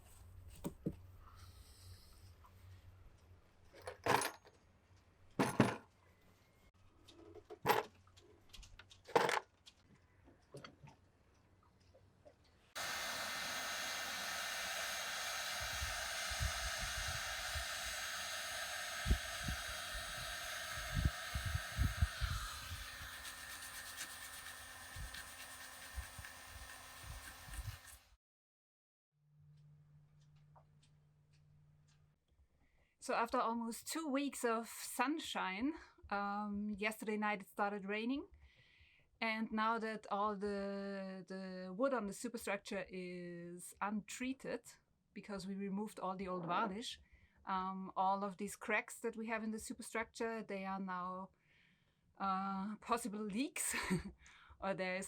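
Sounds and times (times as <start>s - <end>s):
electric power tool whining: 12.8s - 28.2s.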